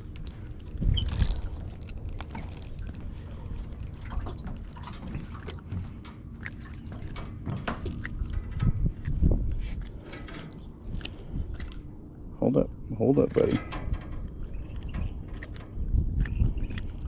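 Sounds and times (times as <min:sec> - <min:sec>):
water splashing and dripping: 0:00.0 - 0:12.0.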